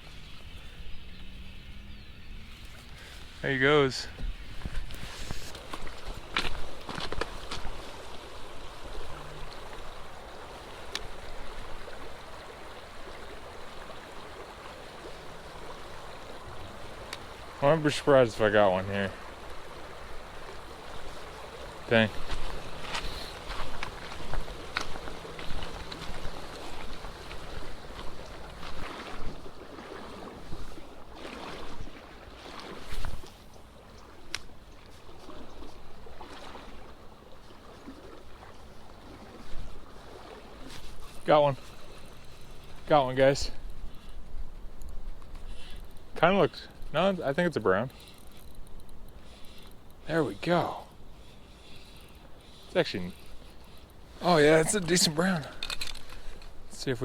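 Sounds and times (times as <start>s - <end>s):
creek rushing: 2.5s - 43.7s, 49.1s - 57.0s
wind rumbling on microphone: 4.1s - 17.6s.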